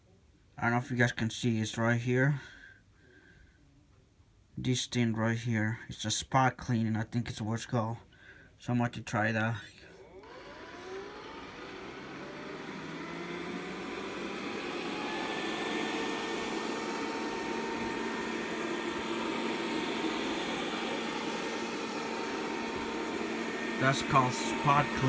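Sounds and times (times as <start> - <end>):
robot vacuum motor humming: 10.2 - 25.0.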